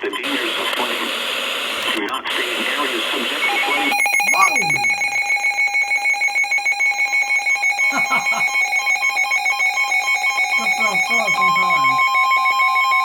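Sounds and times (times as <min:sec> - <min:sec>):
faint voice fragments: 0:04.2 - 0:05.2.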